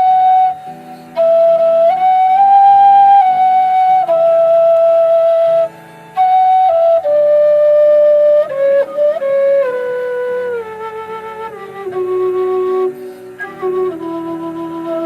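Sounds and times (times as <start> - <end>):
backing accompaniment: 0.0 - 15.0
low whistle slow melody: 0.0 - 15.0.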